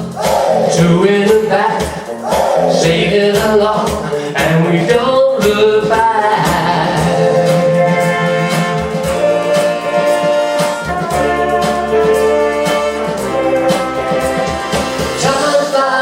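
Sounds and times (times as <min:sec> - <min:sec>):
backing chords: 0:00.0 - 0:15.5
steady drum beat: 0:00.0 - 0:15.7
melodic lead: 0:06.2 - 0:15.3.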